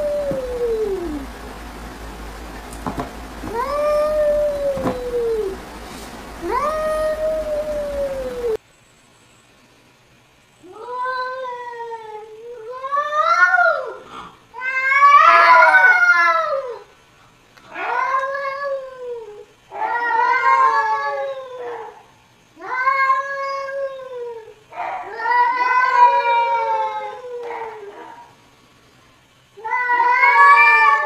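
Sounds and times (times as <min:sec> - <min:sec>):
cat yowling: 0:00.0 - 0:01.4, 0:03.4 - 0:05.6, 0:06.4 - 0:08.6, 0:14.6 - 0:16.8, 0:17.7 - 0:28.3, 0:29.6 - 0:31.0.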